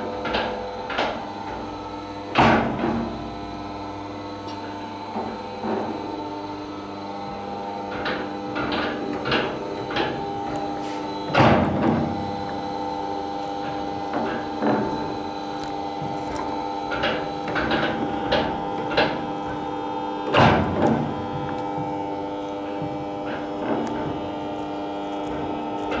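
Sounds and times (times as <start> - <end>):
steady mechanical hum: 0.0 - 26.0
knocks and clatters: 7.9 - 12.7.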